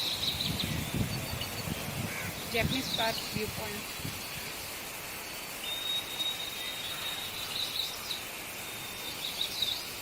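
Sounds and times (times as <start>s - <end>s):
birds chirping: 0.0s - 10.0s
insect hiss: 0.0s - 10.0s.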